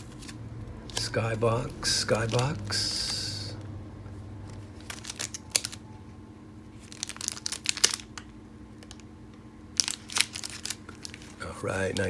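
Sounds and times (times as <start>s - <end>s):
wrappers crinkling: 0.0s - 3.7s, 4.5s - 5.8s, 6.8s - 9.1s, 9.7s - 12.0s.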